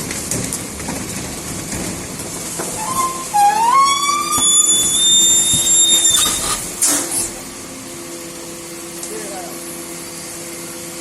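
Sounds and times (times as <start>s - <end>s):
garbage truck machinery squeal: 2.5s - 7.6s.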